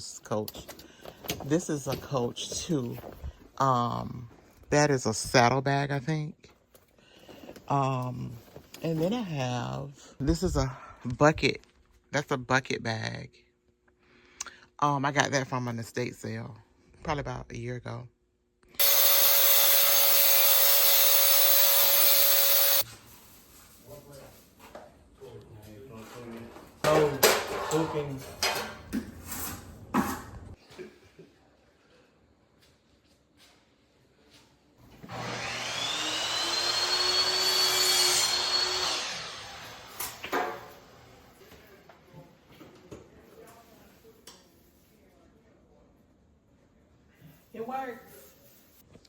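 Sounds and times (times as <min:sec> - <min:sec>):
power tool whining: 0:18.8 - 0:22.8, 0:35.0 - 0:40.2.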